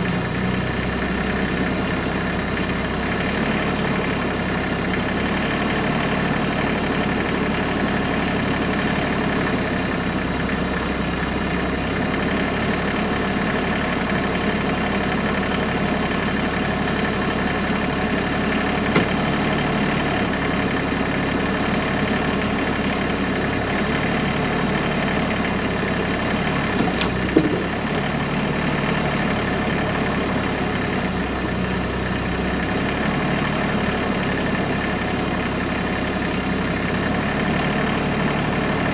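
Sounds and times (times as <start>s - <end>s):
tractor engine running: 0.0s - 38.9s
short knocks: 18.8s - 19.6s, 26.6s - 28.3s.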